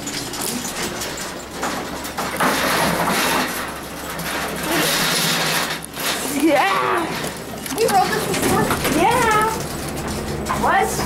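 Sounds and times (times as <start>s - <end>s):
elevator doors sliding: 0.0s - 11.0s.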